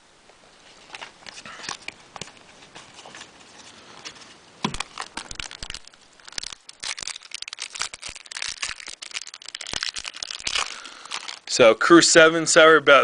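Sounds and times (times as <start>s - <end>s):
cards being handled: 0.8s - 11.5s
wrapper crinkling and tearing: 4.6s - 11.6s.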